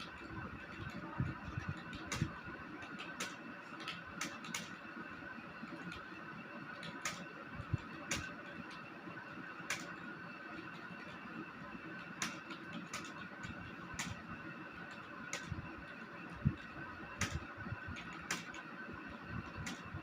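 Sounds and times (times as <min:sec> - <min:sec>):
keyboard keys clicking: 0:00.0 - 0:04.8, 0:06.8 - 0:08.9, 0:09.6 - 0:11.2, 0:11.9 - 0:14.2, 0:14.8 - 0:18.7
steady background hum: 0:00.0 - 0:20.0.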